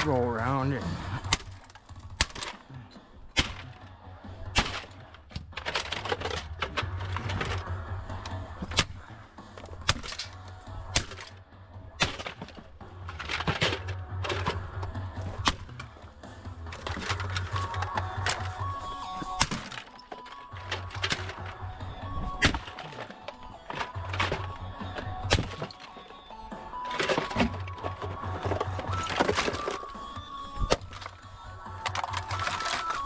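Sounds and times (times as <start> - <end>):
background music with bass line: 0.0 - 33.0
scrap metal clattering into bins: 4.6 - 7.7, 12.0 - 15.8, 16.7 - 31.1, 31.8 - 33.0.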